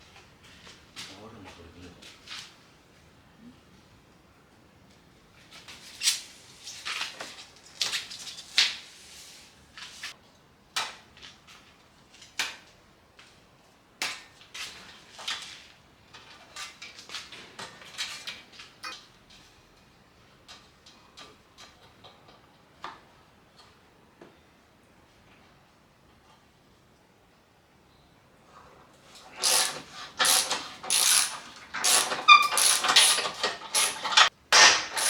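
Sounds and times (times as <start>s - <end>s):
hand tools clicking and clattering: 29.2s - 35.0s.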